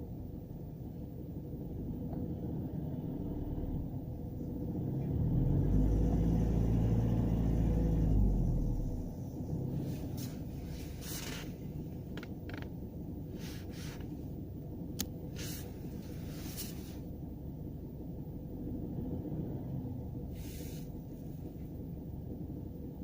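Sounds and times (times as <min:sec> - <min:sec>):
car engine rumble from inside cabin: 0:00.0 - 0:23.0.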